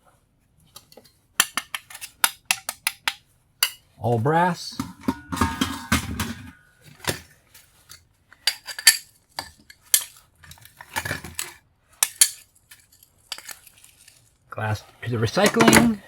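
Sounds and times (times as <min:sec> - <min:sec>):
brass scrap clinking on metal: 0:04.7 - 0:06.6
metallic ring: 0:04.8 - 0:06.6.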